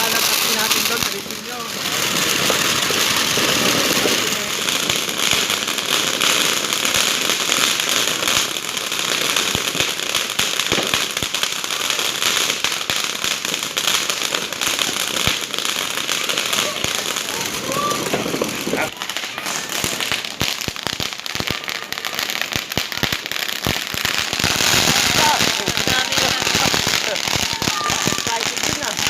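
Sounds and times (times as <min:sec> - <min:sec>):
firecrackers crackling: 0:00.0 - 0:29.0
firework bangs: 0:00.0 - 0:29.0.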